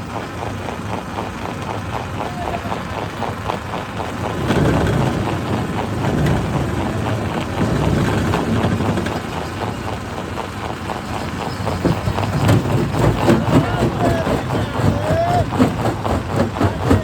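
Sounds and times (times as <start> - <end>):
diesel engine running: 0.0 - 17.0
hydraulic breaker hammering rock: 11.0 - 17.0.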